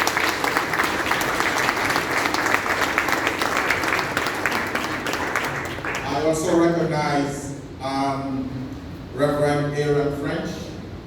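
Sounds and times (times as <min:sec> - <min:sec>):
crowd applauding: 0:00.0 - 0:06.6.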